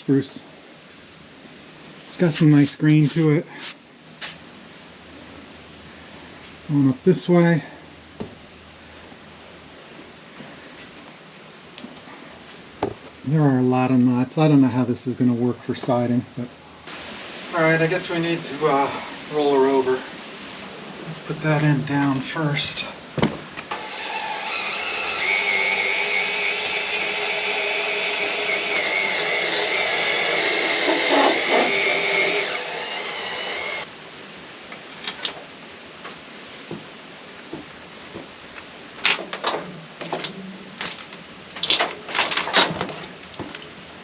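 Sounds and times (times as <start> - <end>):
log knocks and clunks: 23.1 - 23.7
log turner motor whining: 23.6 - 33.9.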